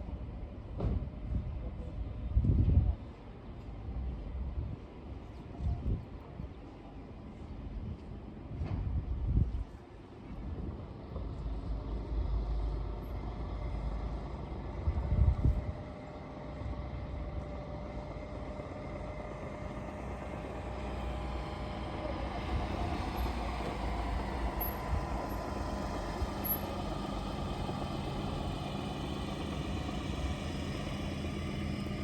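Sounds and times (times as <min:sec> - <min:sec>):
car engine and road noise: 0:10.3 - 0:32.0.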